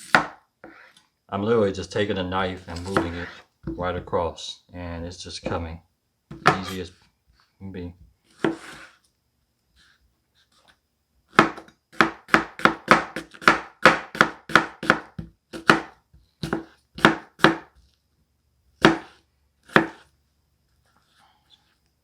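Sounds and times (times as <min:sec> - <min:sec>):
knife chopping onion on board: 0:00.0 - 0:00.4, 0:06.3 - 0:06.8, 0:11.3 - 0:17.8, 0:18.8 - 0:20.0.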